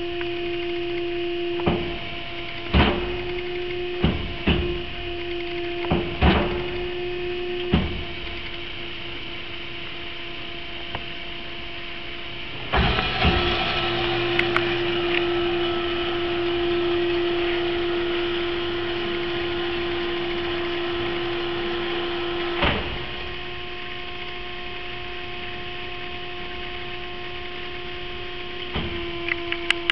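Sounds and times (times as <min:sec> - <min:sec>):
band saw humming: 0:00.0 - 0:29.9
machine clunks: 0:01.6 - 0:08.6, 0:12.6 - 0:21.4, 0:22.2 - 0:23.4.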